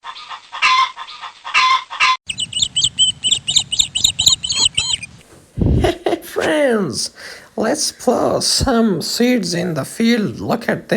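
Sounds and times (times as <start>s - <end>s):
bird clucking calls: 0.0s - 5.2s
high bird chirps: 2.3s - 5.2s.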